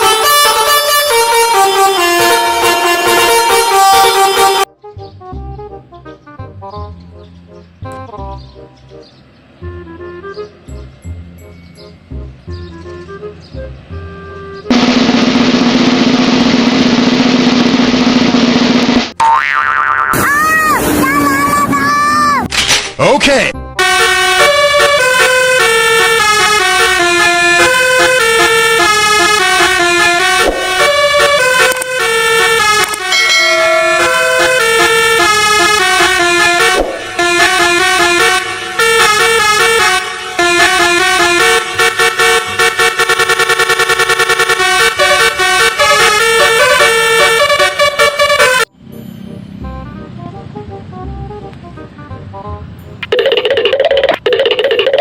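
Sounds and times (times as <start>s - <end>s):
multi-trumpet air horn melody: 0.0s - 4.7s, 23.8s - 48.7s.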